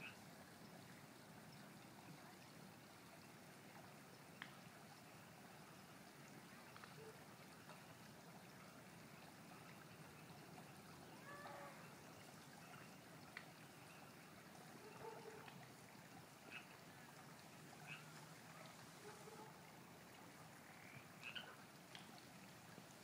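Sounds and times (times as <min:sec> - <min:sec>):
creek trickling: 0:00.0 - 0:23.0
frog calls: 0:16.4 - 0:16.8, 0:17.8 - 0:18.3, 0:20.6 - 0:21.6.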